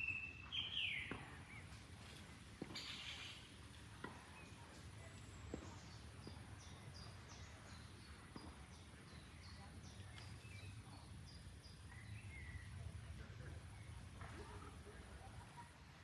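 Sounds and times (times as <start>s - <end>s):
songbird calling high notes: 0.0s - 1.1s.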